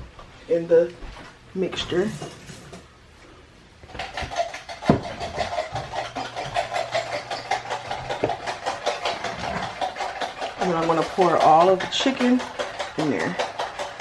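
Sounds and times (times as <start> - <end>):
pepper mill grinding: 3.9 - 14.0.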